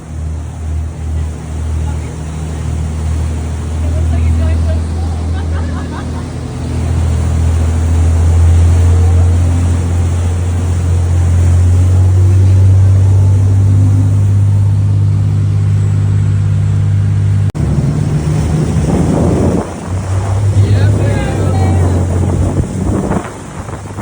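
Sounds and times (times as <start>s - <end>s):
water hissing: 0.0s - 16.0s, 17.6s - 24.0s
boat engine droning: 0.0s - 24.0s
splashing water: 0.0s - 24.0s
wind buffeting microphone: 17.6s - 24.0s.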